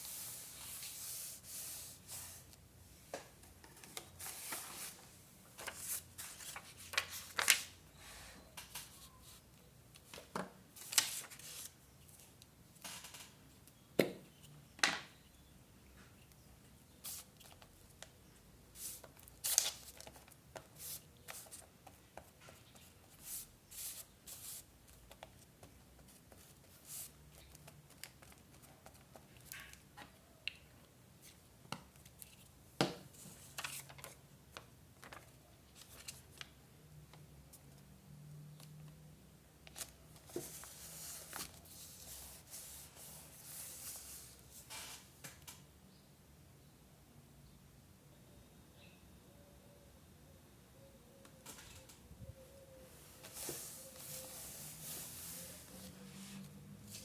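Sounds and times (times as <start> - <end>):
paper rustling and rubbing: 0.0 - 2.6, 4.2 - 7.7, 39.8 - 45.0, 53.0 - 57.0.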